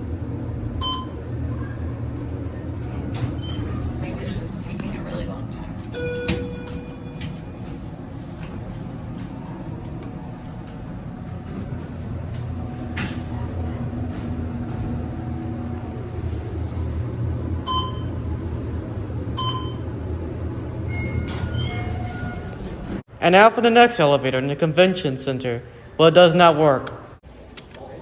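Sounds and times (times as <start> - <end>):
elevator car humming: 0.0 - 23.1
elevator chime: 0.8 - 1.2, 3.2 - 10.6, 17.6 - 18.3, 19.4 - 19.9, 20.8 - 23.0.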